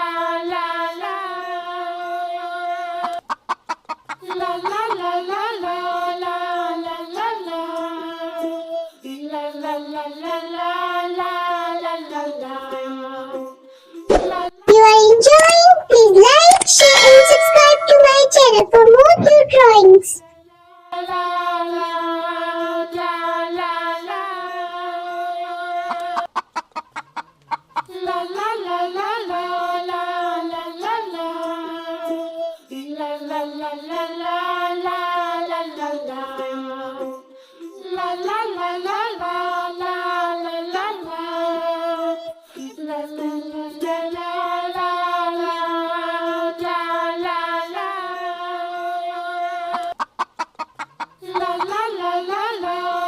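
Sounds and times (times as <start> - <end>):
simple single-line melody: 16.8 - 18.6.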